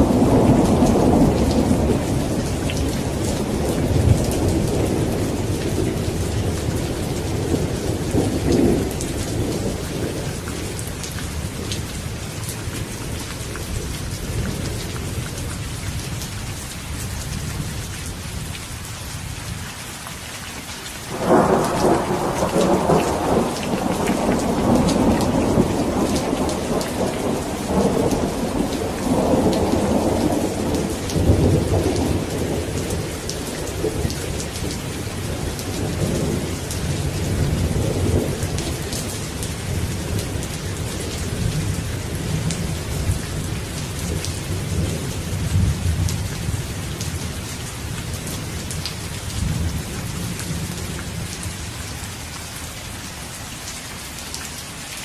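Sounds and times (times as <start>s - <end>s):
thunder rumbling: 0.0s - 15.2s, 21.1s - 51.4s
steady rain falling: 0.0s - 55.0s
raindrops ticking: 0.1s - 52.5s.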